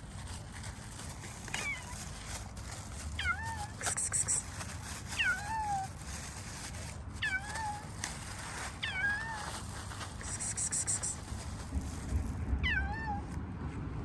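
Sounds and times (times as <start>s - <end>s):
cat meowing: 1.6s - 2.0s, 3.2s - 4.4s, 5.2s - 6.0s, 7.2s - 8.0s, 8.8s - 9.6s, 12.6s - 13.3s.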